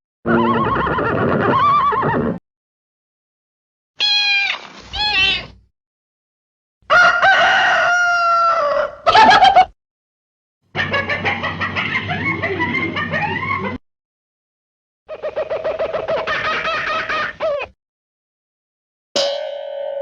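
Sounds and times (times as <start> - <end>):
rooster crowing: 6.9 - 9.6
chickens clucking: 15.1 - 17.6.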